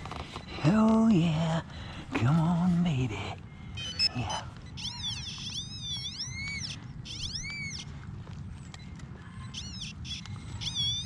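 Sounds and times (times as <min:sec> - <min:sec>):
metal detector warbling tones: 0:03.8 - 0:04.2.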